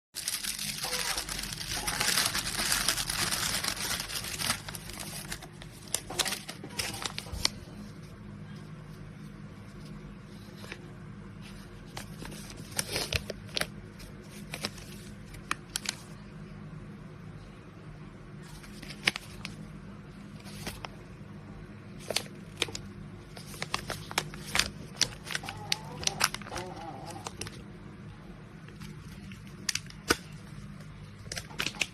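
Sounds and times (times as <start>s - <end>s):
plastic packaging crinkling: 0.2s - 7.9s, 11.8s - 16.2s, 18.5s - 19.6s, 22.0s - 27.7s, 28.7s - 31.9s
steady low hum: 0.2s - 31.9s.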